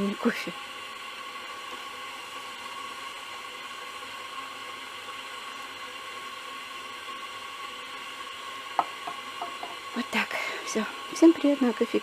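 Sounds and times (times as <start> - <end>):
steady hiss: 0.0 - 12.0.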